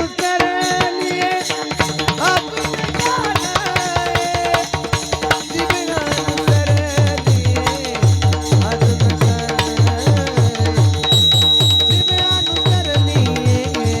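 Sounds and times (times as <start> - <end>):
fast hand drumming: 0.0 - 14.0
held melody line: 8.6 - 14.0.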